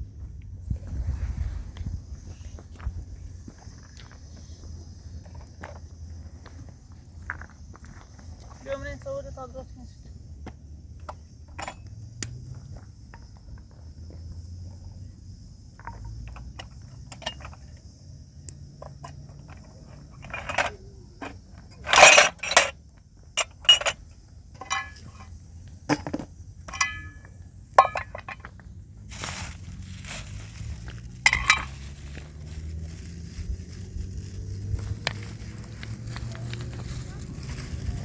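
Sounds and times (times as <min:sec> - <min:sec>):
kitchenware clinking and knocking: 0:23.4 - 0:24.0, 0:24.6 - 0:25.3, 0:26.7 - 0:27.2, 0:27.8 - 0:28.4, 0:31.2 - 0:31.8.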